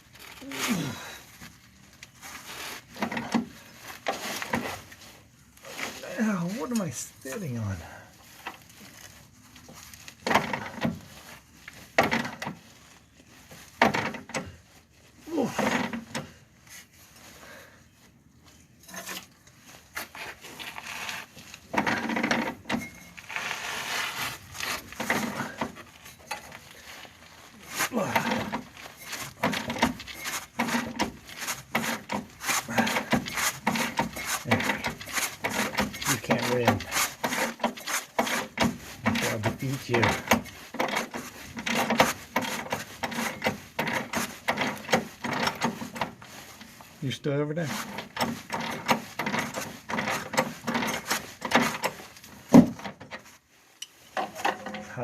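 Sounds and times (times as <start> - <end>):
hand tool rasping: 20.0 - 53.0.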